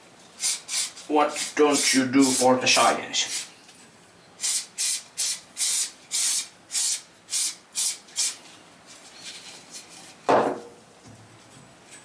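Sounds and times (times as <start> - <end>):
aerosol spray hissing: 0.4 - 3.5, 4.4 - 8.4.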